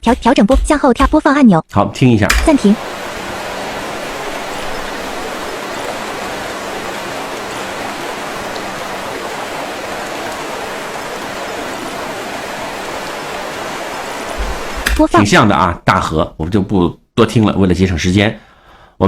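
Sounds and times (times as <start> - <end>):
rushing river water: 2.3 - 15.2.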